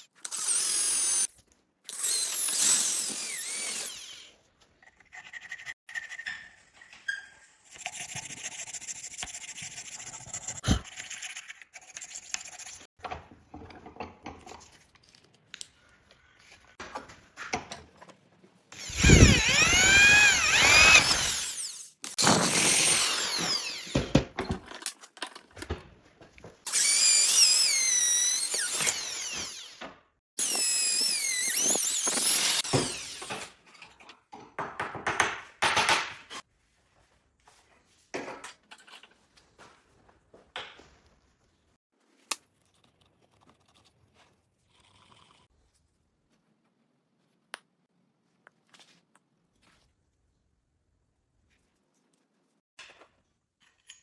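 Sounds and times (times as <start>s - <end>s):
power tool whining on steel: 18.8s - 21.8s.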